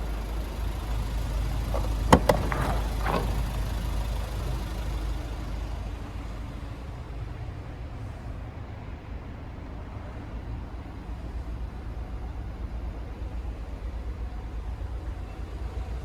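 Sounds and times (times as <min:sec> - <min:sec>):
diesel engine idling: 0:00.0 - 0:07.0
light knocks: 0:01.6 - 0:03.9.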